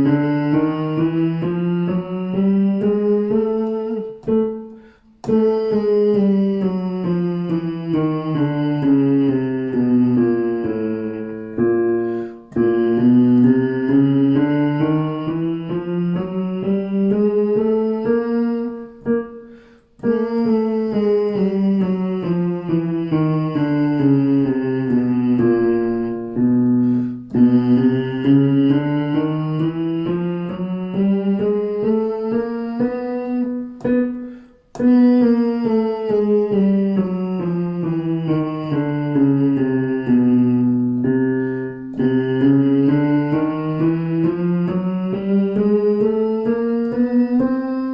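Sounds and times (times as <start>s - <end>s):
piano playing scales: 0.0s - 47.9s.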